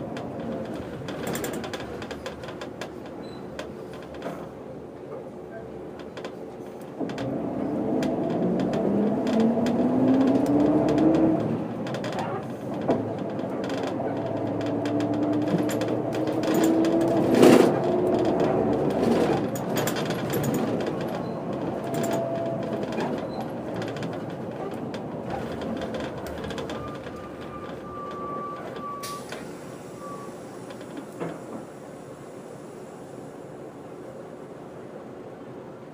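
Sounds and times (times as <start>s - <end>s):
bus diesel engine driving: 0.0s - 35.8s
body rattling: 8.4s - 28.8s.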